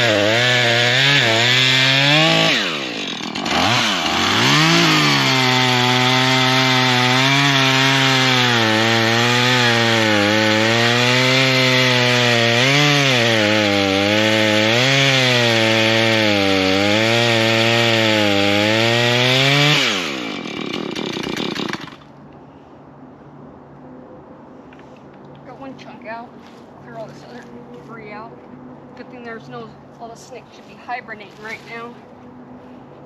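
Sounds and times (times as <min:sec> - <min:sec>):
chainsaw cutting wood: 0:00.0 - 0:22.1.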